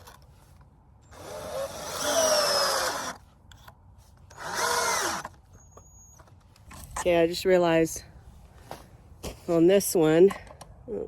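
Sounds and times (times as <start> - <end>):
power drill driving screws: 1.1 - 3.2, 4.3 - 5.4.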